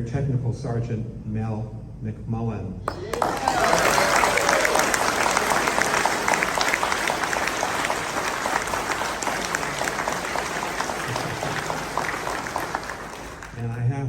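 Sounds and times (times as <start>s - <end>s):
audience applauding: 2.9s - 13.8s
voices: 2.9s - 13.9s.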